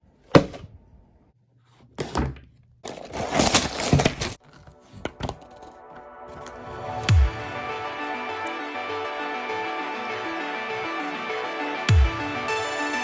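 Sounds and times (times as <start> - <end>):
rustling and tearing: 2.9 - 6.6.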